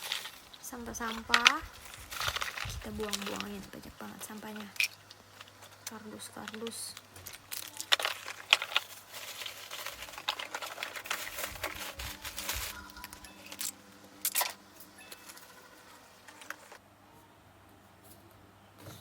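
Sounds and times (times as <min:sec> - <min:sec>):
trash and cardboard rustling: 0:00.0 - 0:05.8, 0:06.4 - 0:13.7.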